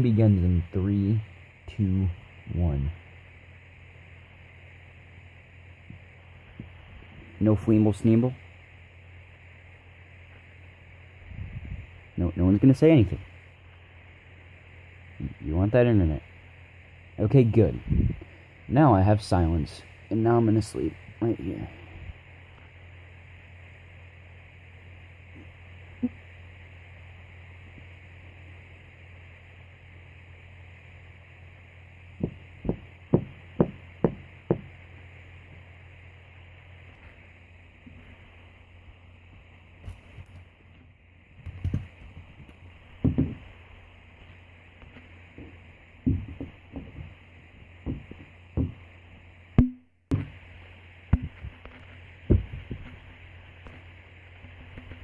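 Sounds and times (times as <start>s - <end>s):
low hum and hiss: 0.0s - 55.0s
sharp knocks: 32.2s - 34.7s, 43.0s - 43.5s, 45.4s - 47.2s, 47.8s - 48.8s.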